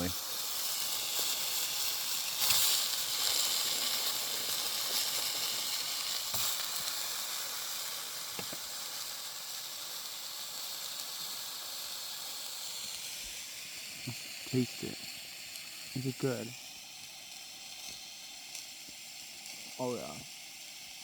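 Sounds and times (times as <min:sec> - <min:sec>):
meat sizzling in a pan: 0:00.0 - 0:21.0.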